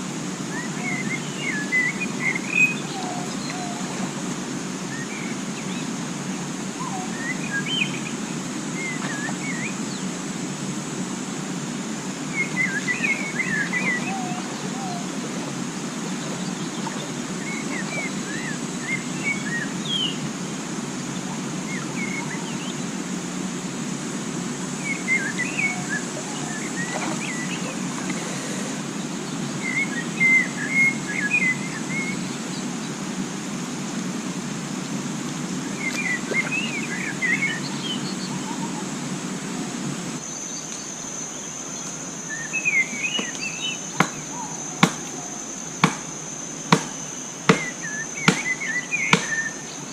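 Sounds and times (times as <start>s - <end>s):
high insect drone: 0.0s - 49.9s
birds chirping: 0.3s - 49.9s
sharp knocks: 46.7s - 47.7s.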